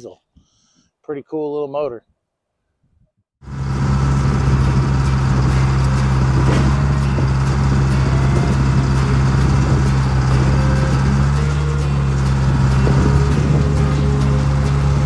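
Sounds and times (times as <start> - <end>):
diesel engine running steadily: 3.4 - 15.0.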